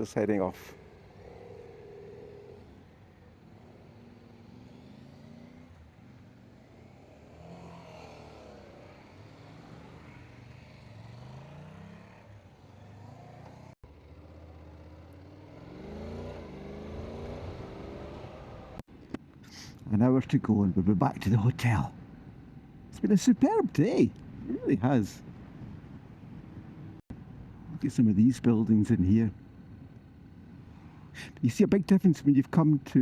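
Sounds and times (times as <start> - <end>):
motorcycle engine accelerating: 0.7 - 18.8.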